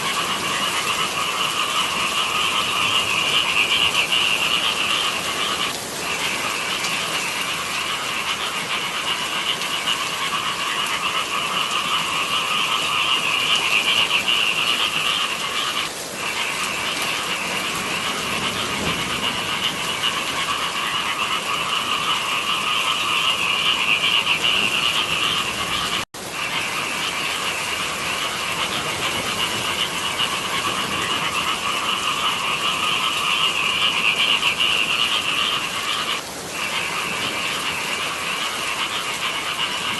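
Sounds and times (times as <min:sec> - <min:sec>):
chorus of frogs calling: 0:00.0 - 0:39.9.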